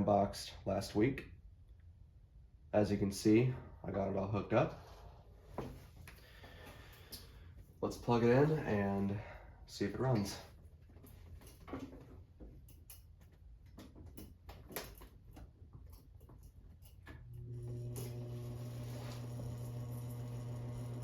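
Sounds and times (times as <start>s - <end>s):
ceiling fan motor humming: 17.3s - 21.0s.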